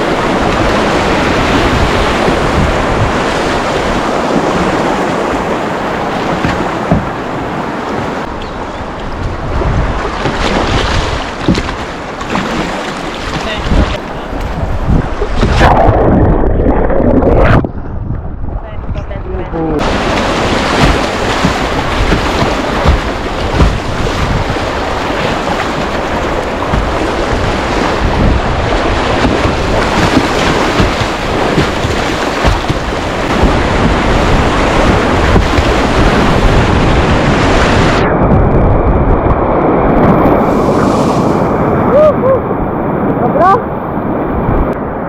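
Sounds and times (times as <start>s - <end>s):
water splashes: 0.0s - 17.6s, 19.7s - 42.4s
wind on microphone: 0.0s - 45.0s
river rapids rushing: 19.8s - 38.0s.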